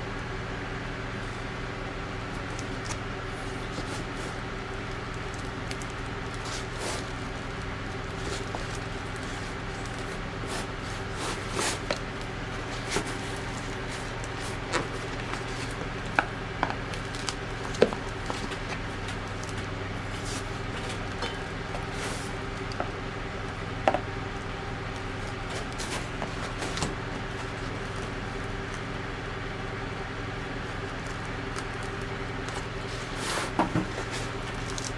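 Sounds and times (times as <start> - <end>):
steady low hum: 0.0 - 34.9.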